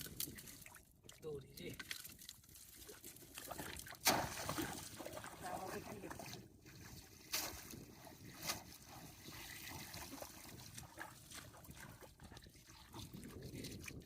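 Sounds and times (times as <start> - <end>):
shallow water sloshing by hand: 0.0 - 14.0
short sharp splashes: 1.8 - 6.4.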